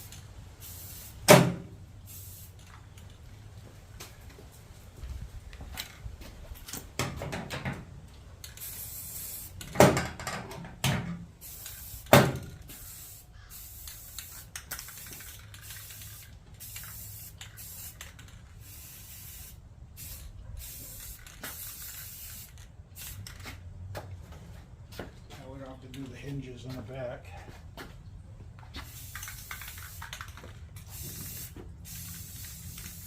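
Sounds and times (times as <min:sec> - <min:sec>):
spray can hissing: 0:00.0 - 0:01.4, 0:02.0 - 0:02.7, 0:08.4 - 0:09.7, 0:11.4 - 0:23.4, 0:28.8 - 0:33.0.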